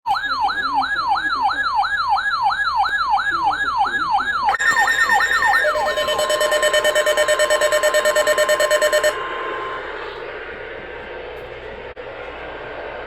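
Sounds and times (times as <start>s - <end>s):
electronic yelp siren: 0.1s - 9.3s
steady alert tone: 4.5s - 9.7s.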